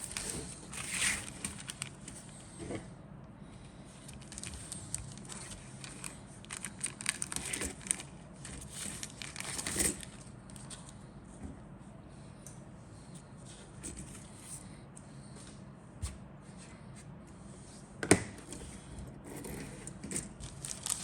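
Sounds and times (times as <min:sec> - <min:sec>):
plastic packaging crinkling: 0:00.0 - 0:02.4, 0:04.1 - 0:10.8, 0:20.3 - 0:21.0.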